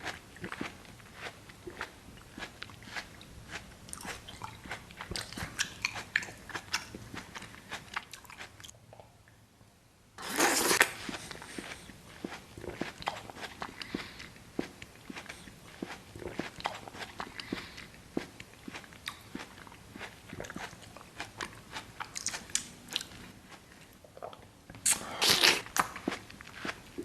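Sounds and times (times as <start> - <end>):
watermelon being bitten and chewed: 0.0 - 9.1, 10.2 - 27.0.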